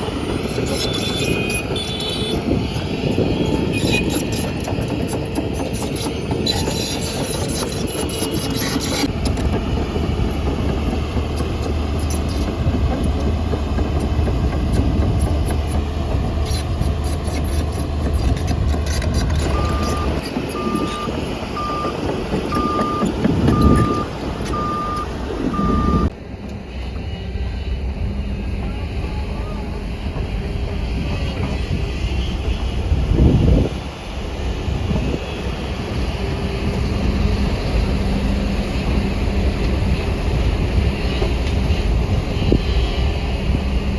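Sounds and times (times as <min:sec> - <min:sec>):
heavy diesel machinery running: 0:00.0 - 0:43.9
reversing alarm beeps: 0:19.5 - 0:26.1.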